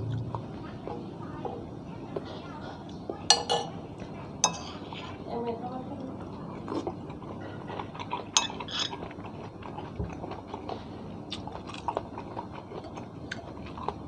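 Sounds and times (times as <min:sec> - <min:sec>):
chewing: 0:00.0 - 0:01.4, 0:06.0 - 0:14.0
cutlery clinking on dishes: 0:03.3 - 0:03.8, 0:04.4 - 0:04.8, 0:08.3 - 0:09.0.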